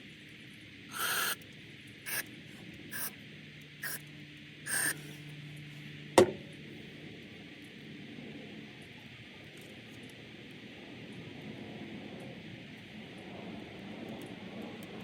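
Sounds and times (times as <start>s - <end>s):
aerosol spray hissing: 0.9s - 1.4s, 2.9s - 3.2s, 4.7s - 5.2s.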